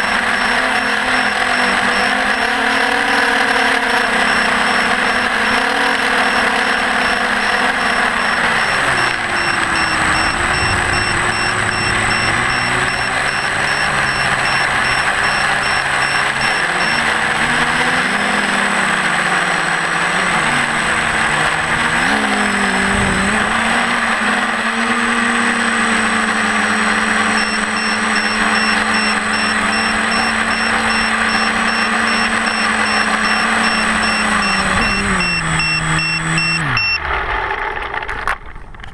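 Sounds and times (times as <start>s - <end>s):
rapid high-pitched beeping: 0.0s - 18.7s, 26.8s - 37.0s
electric motors and propellers humming: 0.0s - 38.9s.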